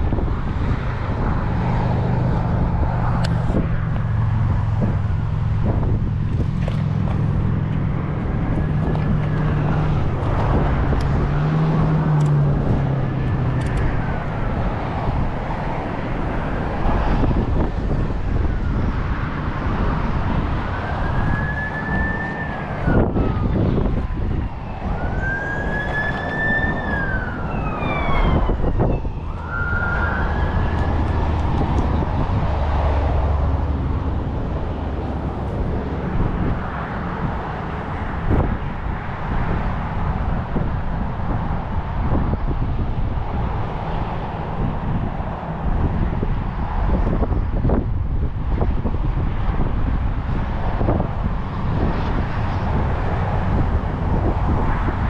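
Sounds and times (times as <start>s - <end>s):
low engine hum: 0.0s - 55.0s
wind noise: 0.0s - 55.0s
distant emergency siren wailing: 19.9s - 37.4s.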